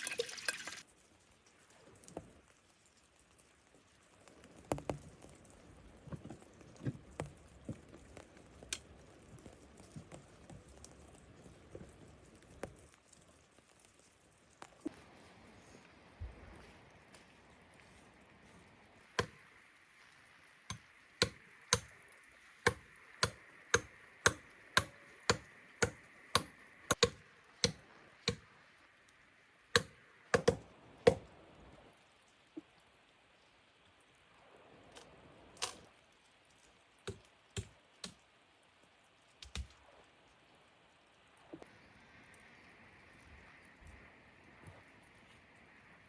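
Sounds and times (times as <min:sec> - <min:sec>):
hand tool chopping blows: 0:22.7 - 0:28.4.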